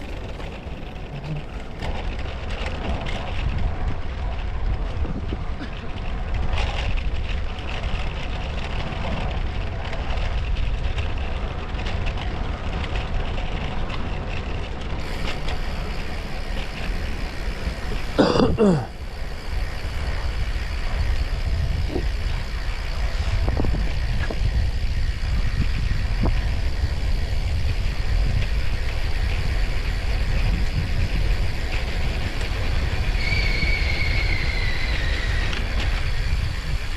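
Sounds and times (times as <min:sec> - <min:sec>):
wind rumble on microphone: 0:00.0 - 0:36.9.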